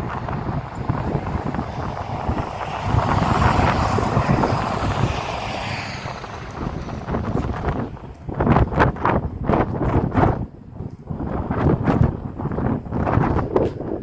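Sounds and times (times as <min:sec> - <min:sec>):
passing vehicle: 0:00.0 - 0:14.0
wind buffeting microphone: 0:00.0 - 0:14.0.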